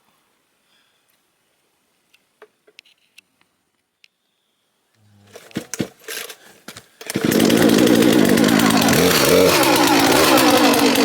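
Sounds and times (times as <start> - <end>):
chainsaw starter pull: 5.3 - 6.4, 7.0 - 11.0
chainsaw engine running: 7.0 - 11.0.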